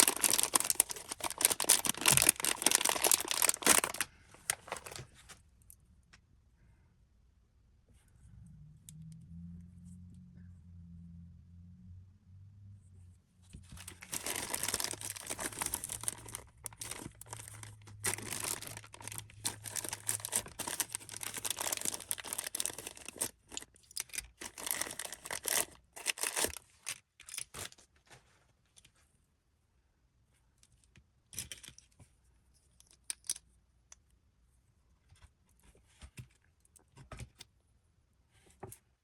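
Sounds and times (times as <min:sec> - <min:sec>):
packaging tearing and crinkling: 0:00.0 - 0:05.0, 0:13.8 - 0:27.8.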